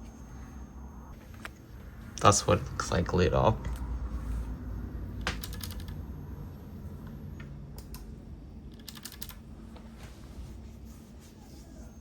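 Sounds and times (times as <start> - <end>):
mechanical keyboard clicks: 5.2 - 6.0, 8.7 - 9.4.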